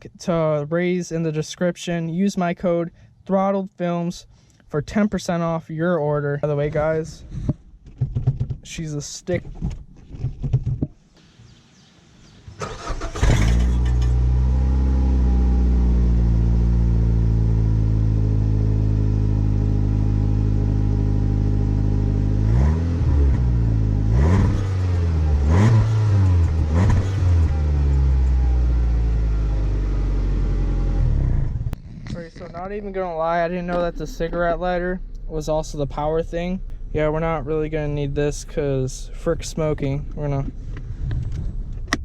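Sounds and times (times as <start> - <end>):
car engine starting: 12.2 - 42.0
car engine idling: 12.5 - 42.0
engine revving: 12.6 - 32.6.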